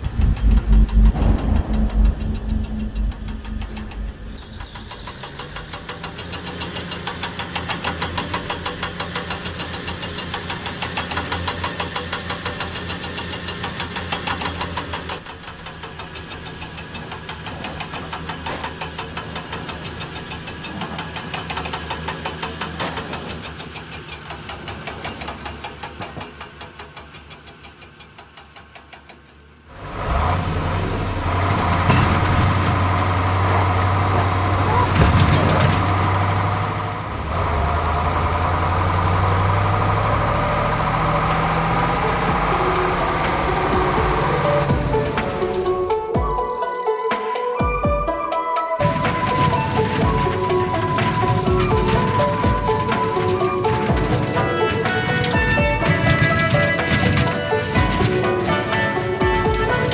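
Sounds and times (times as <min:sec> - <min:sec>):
faint high whine: 0:00.0 - 0:06.0
steady ticking: 0:00.0 - 0:09.8
engine knocking clatter: 0:00.0 - 0:46.6, 0:48.8 - 0:59.9.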